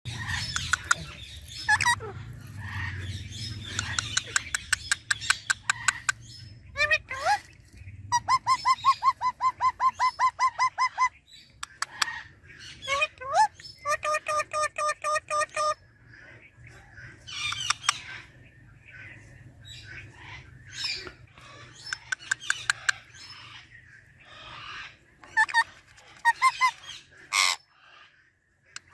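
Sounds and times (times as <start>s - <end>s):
parrot squawk: 0.1s - 6.2s, 24.4s - 28.0s
parrot chirping: 0.1s - 15.8s, 17.3s - 18.2s, 21.7s - 23.6s, 24.4s - 27.6s
parrot clicks: 0.3s - 1.1s, 3.8s - 6.2s.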